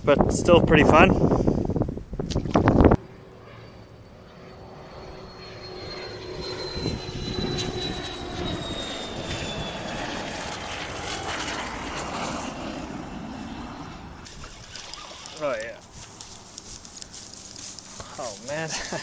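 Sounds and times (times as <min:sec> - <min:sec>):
passing engine drone: 0:02.9 - 0:15.4.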